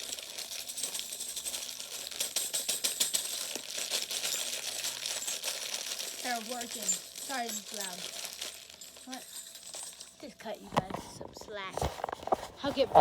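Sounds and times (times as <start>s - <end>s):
metal jingle bells jingling: 0.0s - 13.0s.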